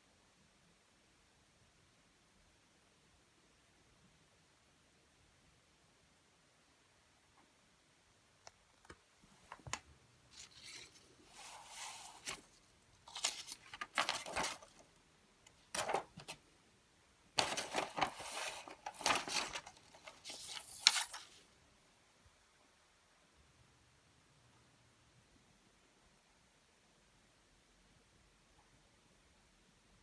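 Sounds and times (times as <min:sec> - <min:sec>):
rustling and scraping: 0:09.5 - 0:14.9, 0:17.4 - 0:21.4.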